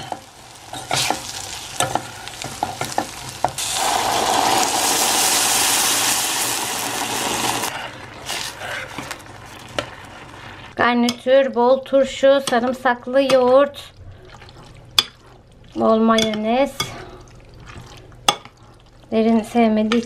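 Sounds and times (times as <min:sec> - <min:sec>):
spoon stirring and scraping: 0:00.0 - 0:03.6
vegetables sizzling in a pot: 0:00.0 - 0:10.8
loud even hiss: 0:03.6 - 0:07.7.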